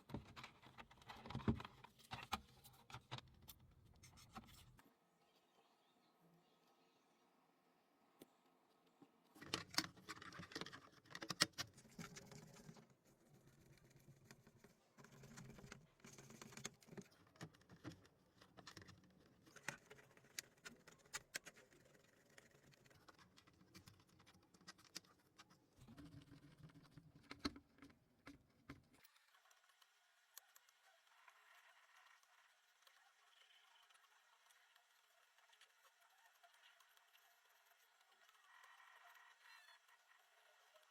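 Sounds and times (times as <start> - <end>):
plastic keyboard parts clicking: 0.0 - 3.6, 9.4 - 12.8.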